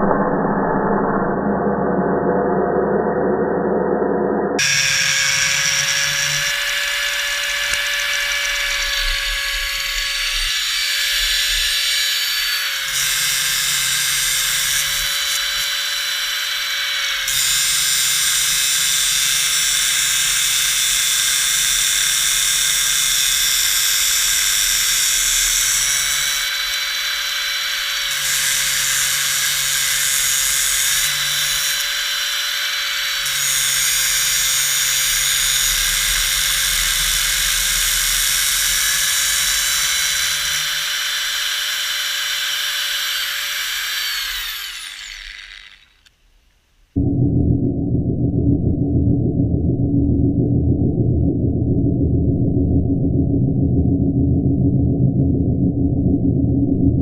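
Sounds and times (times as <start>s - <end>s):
angle grinder whining: 4.6s - 46.5s.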